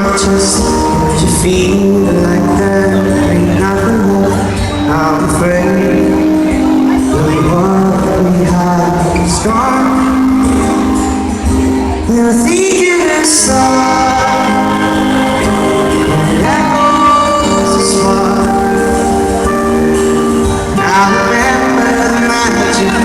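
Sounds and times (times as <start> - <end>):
live band accompaniment: 0.0 - 23.0
man singing long held notes: 11.9 - 20.0, 20.6 - 23.0.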